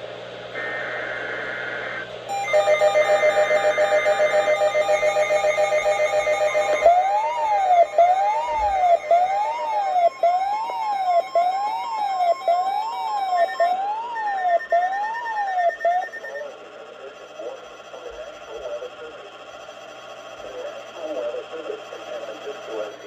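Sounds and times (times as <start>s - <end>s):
pulsing electronic alert chord: 2.3s - 16.5s
siren-like sweeping tone: 2.3s - 16.5s.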